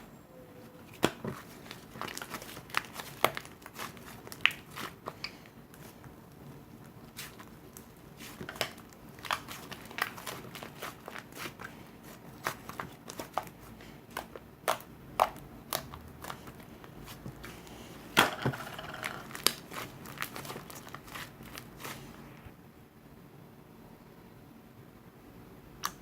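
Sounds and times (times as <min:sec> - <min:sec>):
slime popping and crackling: 0:00.9 - 0:16.6, 0:17.2 - 0:22.1.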